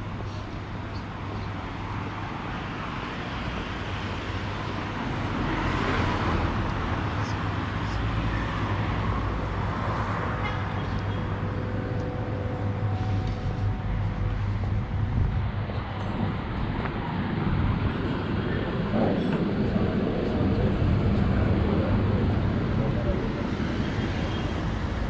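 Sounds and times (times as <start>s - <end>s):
vehicles passing: 0.0s - 25.0s
steady low hum: 6.8s - 25.0s.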